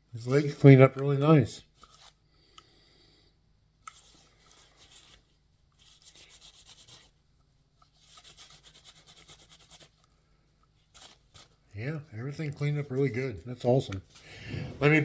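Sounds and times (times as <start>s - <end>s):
scrubbing on plastic figure: 3.9s - 7.2s, 7.8s - 10.0s.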